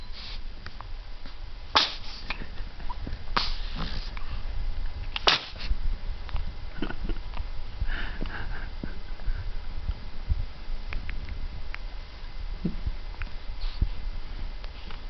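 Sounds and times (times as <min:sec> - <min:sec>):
baby sneezing: 0:01.8 - 0:02.2, 0:03.4 - 0:04.1, 0:05.2 - 0:05.6.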